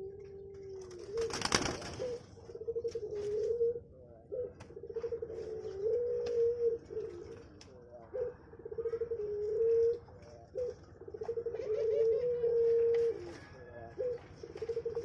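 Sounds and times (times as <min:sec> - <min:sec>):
dove cooing with trills: 0:00.0 - 0:15.0.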